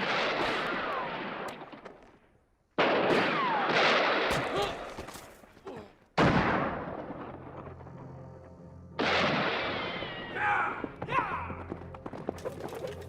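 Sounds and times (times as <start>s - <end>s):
gunshot with echoing decay: 2.8s - 4.8s, 6.2s - 7.5s
film score music: 6.2s - 13.0s.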